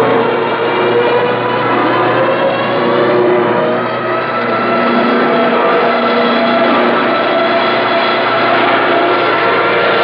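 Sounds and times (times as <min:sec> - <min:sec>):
propeller plane engines droning: 0:00.0 - 0:10.0.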